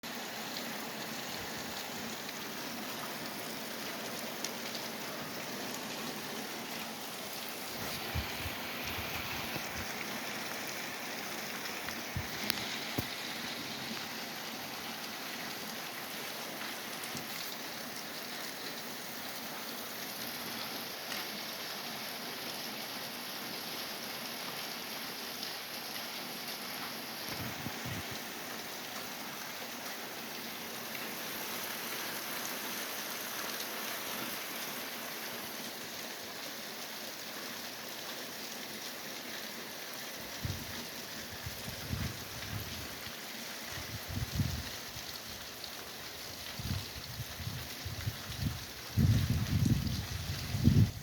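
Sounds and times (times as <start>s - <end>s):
steady rain hiss: 0.0s - 51.0s
rain drop ticks: 11.7s - 13.2s.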